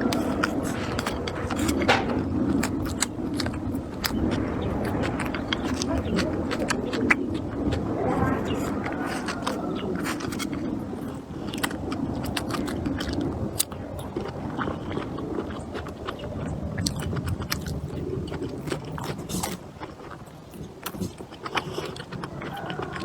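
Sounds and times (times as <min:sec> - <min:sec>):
person chewing food: 0:00.0 - 0:23.0.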